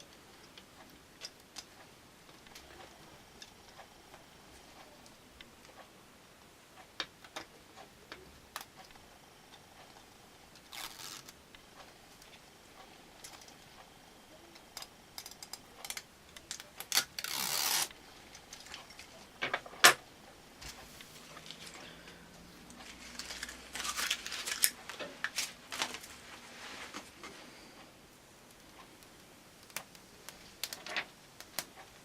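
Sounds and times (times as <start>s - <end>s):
small parts clicking and tapping: 8.1s - 13.9s, 14.5s - 20.0s, 22.7s - 26.0s, 28.5s - 32.0s
tape backing peeling: 10.6s - 11.4s, 15.2s - 18.9s, 22.7s - 26.2s.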